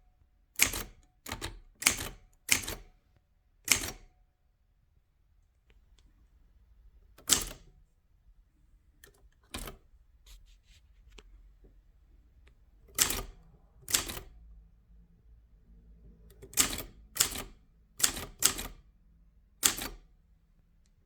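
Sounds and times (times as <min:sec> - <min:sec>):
faint typewriter mechanism clicks: 0:07.2 - 0:07.7, 0:09.0 - 0:09.9, 0:12.8 - 0:14.4, 0:16.3 - 0:18.8, 0:19.6 - 0:20.1
typewriter keys clacking: 0:12.9 - 0:14.3, 0:16.4 - 0:18.8.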